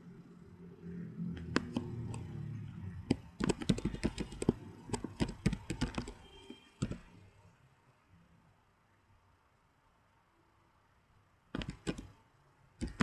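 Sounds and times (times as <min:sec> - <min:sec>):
computer keyboard typing: 0:01.4 - 0:02.4, 0:03.0 - 0:07.1, 0:11.5 - 0:12.2, 0:12.8 - 0:13.0.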